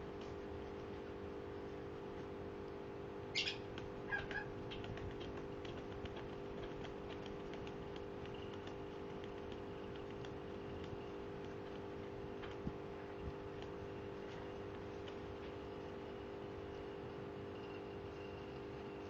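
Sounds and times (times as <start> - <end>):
steady low hum: 0.0 - 19.0
faint ticks and taps: 3.7 - 15.6.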